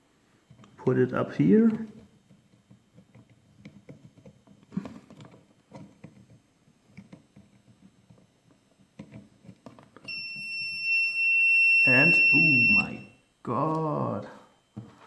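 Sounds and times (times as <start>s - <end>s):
cable connectors clicking and rustling: 1.6s - 10.2s
high-pitched buzzer beep: 10.1s - 13.2s.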